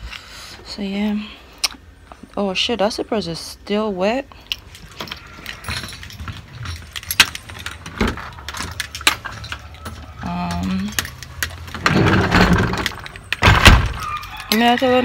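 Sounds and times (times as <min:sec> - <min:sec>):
keys jangling: 0:04.5 - 0:11.8, 0:12.8 - 0:15.0.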